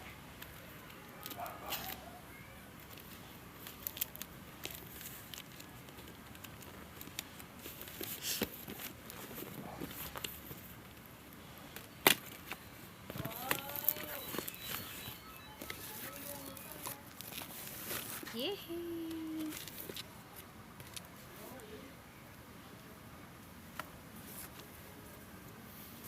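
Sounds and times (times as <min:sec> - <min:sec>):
plastic packaging crackling: 0:00.3 - 0:20.1
tape tearing: 0:00.4 - 0:02.1, 0:02.8 - 0:10.7, 0:11.8 - 0:18.4.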